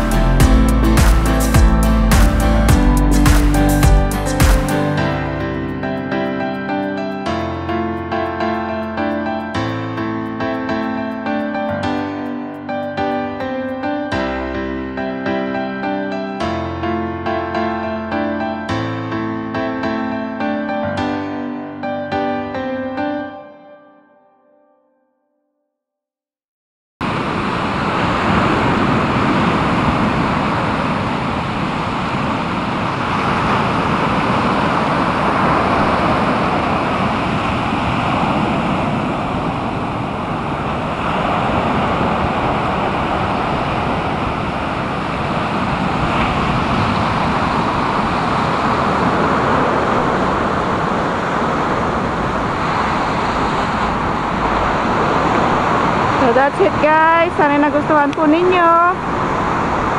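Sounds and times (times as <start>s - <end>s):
outdoor ambient rushing: 27.0s - 59.9s.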